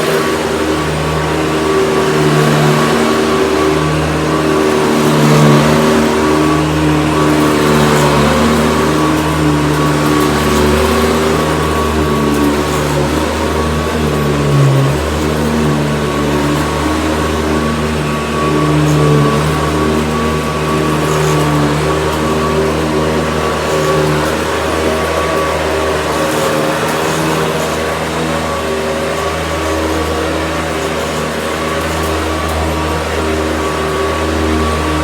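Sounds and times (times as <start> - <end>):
vacuum cleaner running: 0.0 - 35.0.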